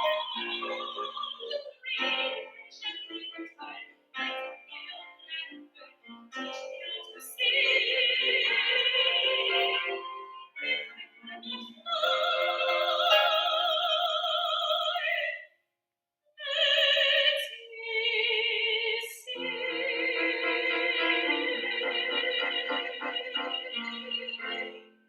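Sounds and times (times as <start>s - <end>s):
piano accompaniment: 0.0s - 13.8s, 19.4s - 25.0s
soprano singing operatic ballad: 0.0s - 15.4s, 16.4s - 24.9s.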